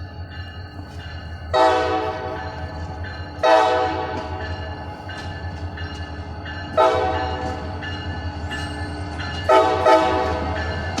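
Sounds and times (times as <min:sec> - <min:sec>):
train low rumble: 0:00.0 - 0:11.0
locomotive air horn blasts: 0:01.5 - 0:02.5, 0:03.4 - 0:04.4, 0:06.8 - 0:07.5, 0:09.5 - 0:10.6.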